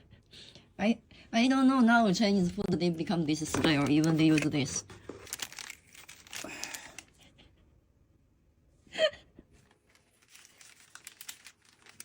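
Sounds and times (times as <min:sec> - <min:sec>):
containers clicking: 0:03.4 - 0:05.5
food packaging rustling: 0:03.4 - 0:07.1, 0:09.7 - 0:12.0
person gasping: 0:06.3 - 0:07.2.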